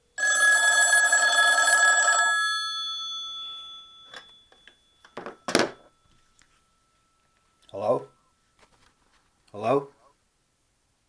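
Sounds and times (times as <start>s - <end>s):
telephone bells ringing: 0.2s - 8.8s.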